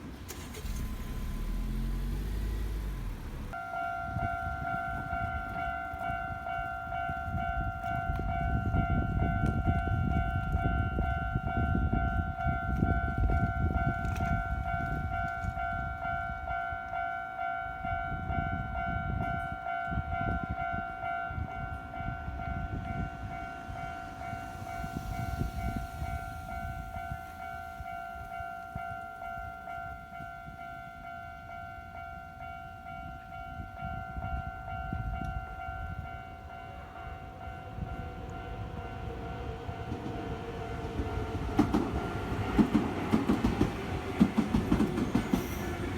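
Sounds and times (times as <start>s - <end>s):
train rumbling past: 0.0s - 45.9s
crossing warning bell dinging: 0.3s - 45.9s
falling whine: 22.5s - 28.4s.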